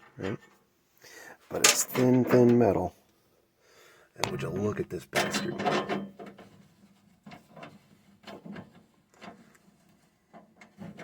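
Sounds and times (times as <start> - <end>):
handling knocks and scrapes: 1.5 - 2.9.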